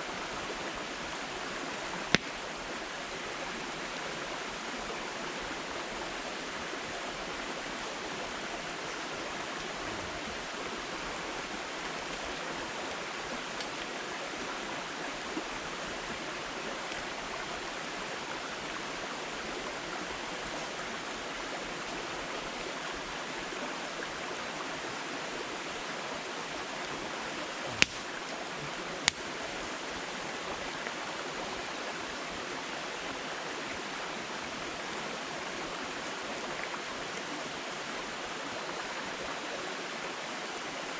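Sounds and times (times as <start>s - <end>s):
campfire hissing: 0.1s - 23.2s, 24.9s - 36.7s
firewood popping: 2.1s - 2.4s, 27.7s - 28.1s, 29.0s - 29.3s.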